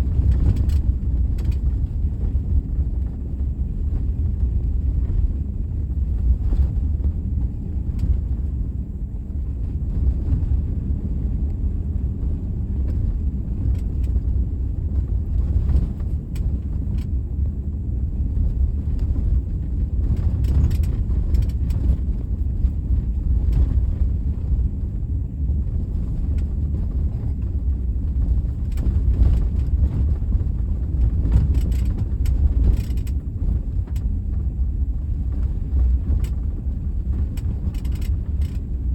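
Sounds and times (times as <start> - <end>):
low road rumble: 0.0 - 38.9
car knocks and rattles: 18.3 - 24.9, 25.5 - 38.9.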